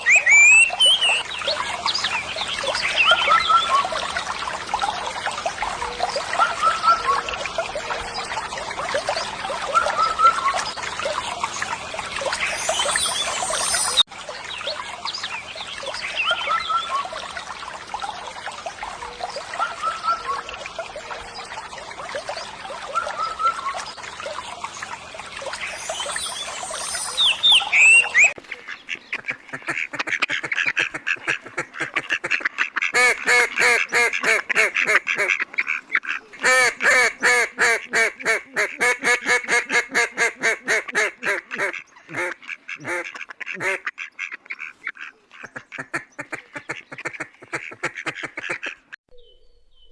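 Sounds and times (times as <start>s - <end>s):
water trickling: 0.0s - 49.0s.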